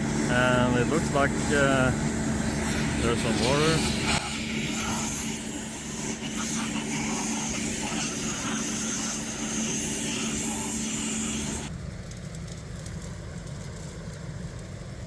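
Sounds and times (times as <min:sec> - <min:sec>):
compressor air hiss: 0:00.0 - 0:11.7
drill rig engine drone: 0:00.0 - 0:11.9.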